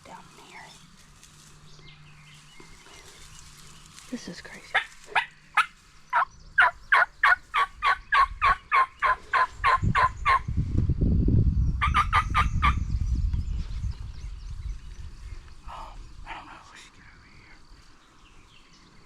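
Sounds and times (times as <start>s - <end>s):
low rumble: 0.0s - 17.1s
turkey yelping: 4.7s - 10.4s, 11.8s - 12.8s.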